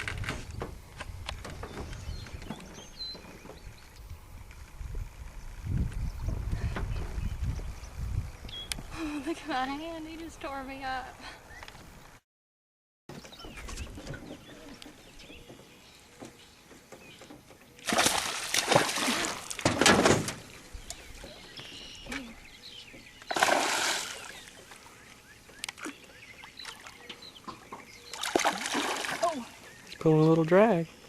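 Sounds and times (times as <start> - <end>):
fish splashing at water surface: 17.8 - 19.7, 23.3 - 24.5, 28.2 - 29.4.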